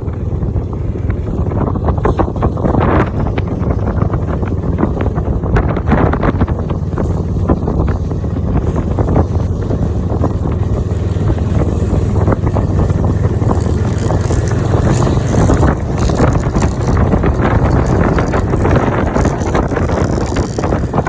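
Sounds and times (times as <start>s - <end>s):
wind buffeting microphone: 0.0s - 21.0s
short crackles and scrapes: 5.5s - 21.0s.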